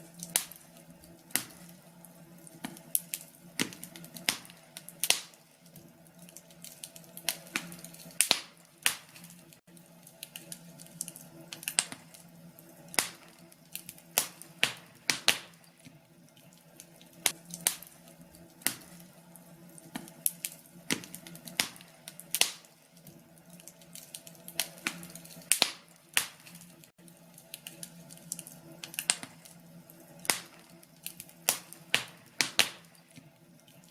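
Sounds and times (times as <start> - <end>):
wood fire crackling and popping: 0.0 - 33.9.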